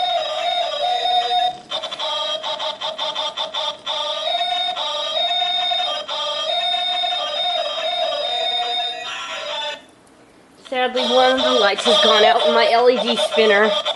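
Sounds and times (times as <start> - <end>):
tinny electronic beeping melody: 0.0 - 9.8.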